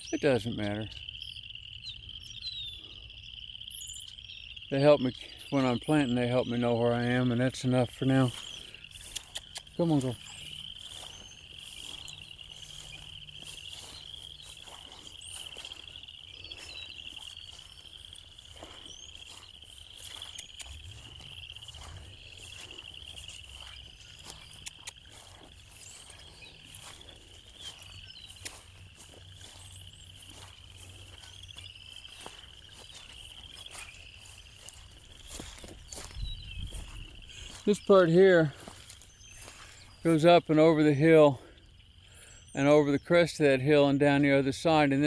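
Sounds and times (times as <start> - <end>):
insects calling with pulsing trill: 0.0 - 45.0
faint clicks: 8.9 - 9.8.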